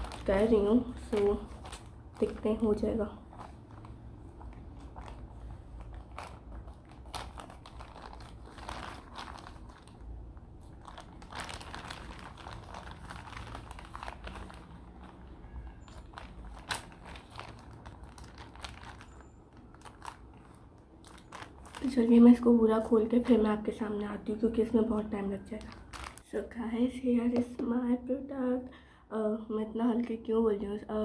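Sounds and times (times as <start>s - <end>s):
packaging crinkling and rustling: 0.0s - 22.5s, 25.3s - 26.3s.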